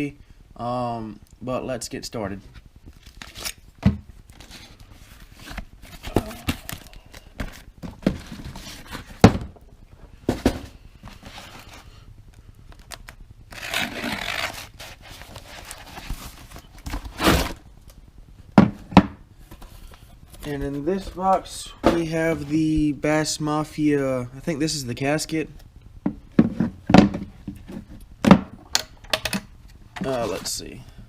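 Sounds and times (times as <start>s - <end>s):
cardboard tearing and crinkling: 3.0s - 3.6s, 12.8s - 17.6s.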